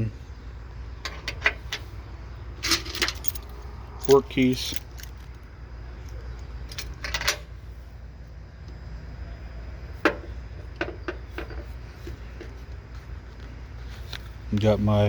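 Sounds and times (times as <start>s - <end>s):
keys clicking and clinking: 2.6s - 7.4s.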